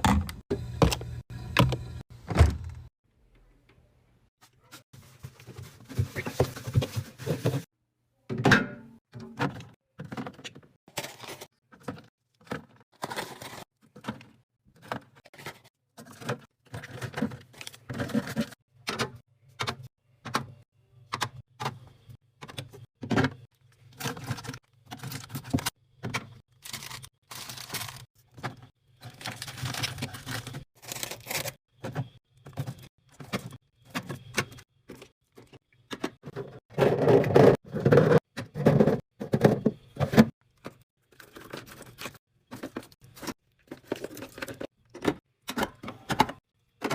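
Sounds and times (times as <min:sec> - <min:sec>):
items clunking and tapping: 0:00.0 - 0:02.9, 0:08.3 - 0:30.7, 0:31.3 - 0:46.9.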